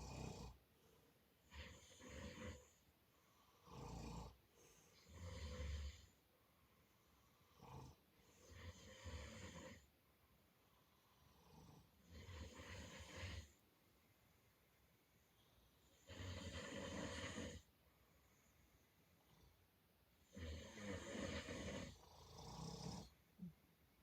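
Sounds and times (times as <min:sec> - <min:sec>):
person snoring: 0:00.0 - 0:00.6, 0:01.4 - 0:02.8, 0:03.5 - 0:06.1, 0:07.4 - 0:09.9, 0:11.2 - 0:13.6, 0:15.9 - 0:17.7, 0:20.2 - 0:23.2.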